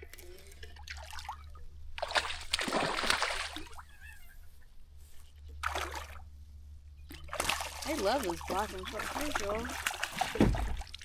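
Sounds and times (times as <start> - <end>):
fish splashing in water: 2.0 - 3.8, 7.1 - 11.0.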